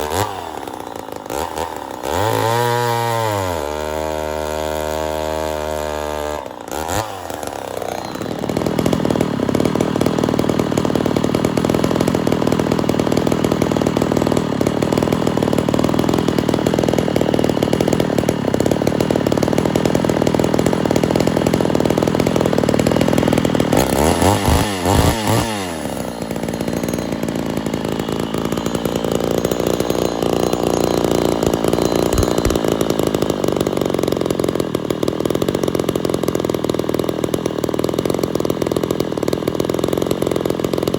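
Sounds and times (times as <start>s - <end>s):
chainsaw running at high throttle: 0.0s - 40.9s.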